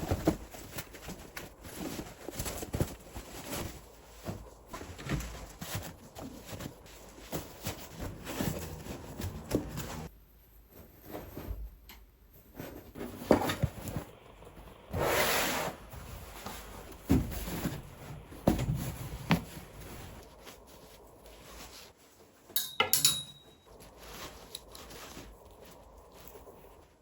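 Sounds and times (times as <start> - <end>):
clicks with metallic ring: 22.6 - 23.6.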